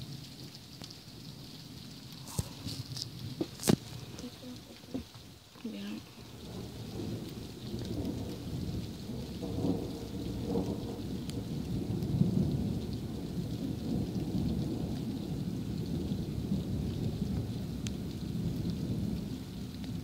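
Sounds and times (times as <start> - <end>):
steady rain: 0.0 - 20.0
rolling thunder: 6.1 - 20.0.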